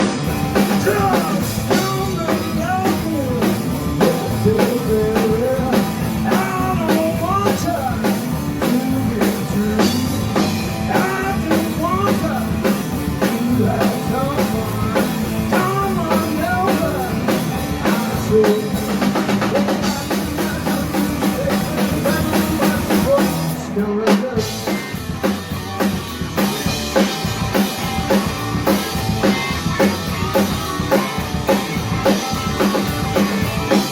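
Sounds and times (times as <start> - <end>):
blues rock band playing: 0.0 - 33.9
drum kit beat: 0.0 - 33.9.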